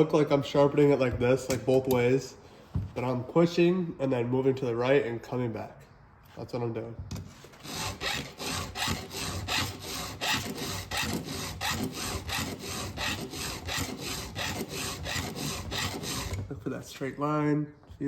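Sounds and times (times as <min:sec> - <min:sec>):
file rasping on chainsaw chain: 0:07.6 - 0:16.4.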